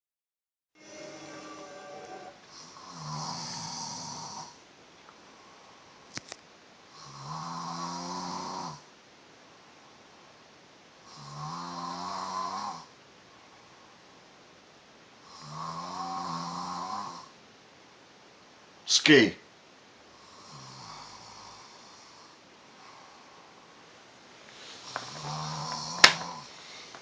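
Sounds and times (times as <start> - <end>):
man snoring: 2.6 - 4.6, 6.9 - 8.8, 11.1 - 12.9, 15.2 - 17.3, 20.2 - 23.2, 24.8 - 26.5.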